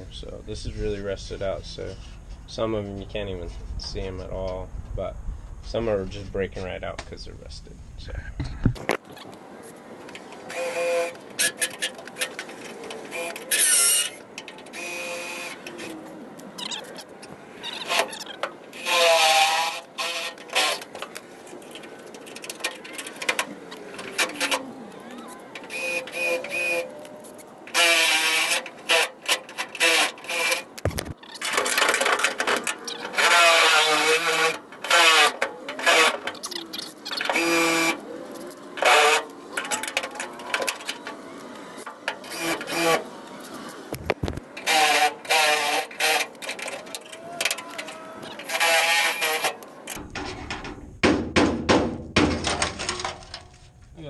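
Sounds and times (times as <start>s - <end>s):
metallic squeal: 10.5s - 16.0s, 24.0s - 43.0s, 44.6s - 50.0s
electric drill cutting metal: 14.8s - 15.6s, 25.7s - 26.9s
dull thump: 50.0s - 52.7s.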